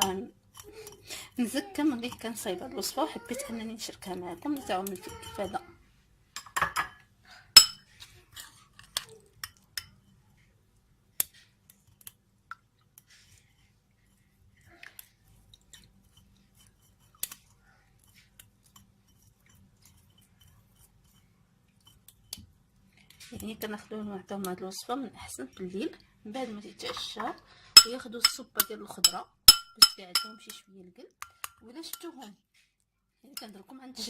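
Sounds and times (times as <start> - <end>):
kitchen utensils and dishes clinking: 6.4 - 7.0, 7.6 - 10.0, 26.8 - 30.6.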